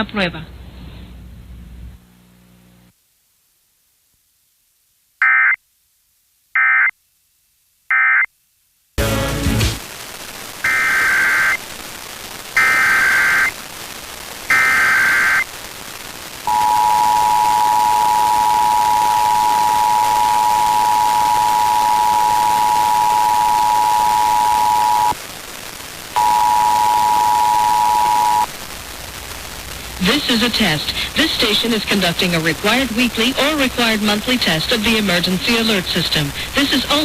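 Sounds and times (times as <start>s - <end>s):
radio static hiss: 9.0s - 37.0s
screechy data tone bursts: 10.7s - 11.6s, 12.6s - 13.5s, 14.5s - 15.5s, 16.5s - 25.2s, 26.2s - 28.5s
two-tone attention signal: 16.5s - 25.1s.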